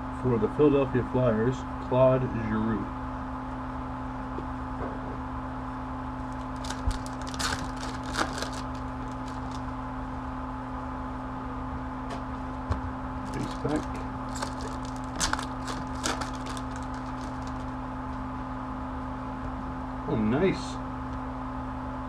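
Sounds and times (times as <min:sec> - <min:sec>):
electrical hum: 0:00.0 - 0:22.0
cards being handled: 0:06.3 - 0:09.6, 0:13.3 - 0:17.8
card pack wrapper crinkling: 0:06.3 - 0:09.7, 0:13.3 - 0:17.8.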